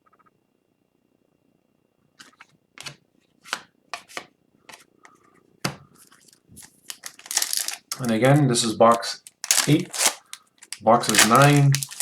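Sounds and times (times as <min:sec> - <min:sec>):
cards rustling and snapping: 0:06.0 - 0:12.0.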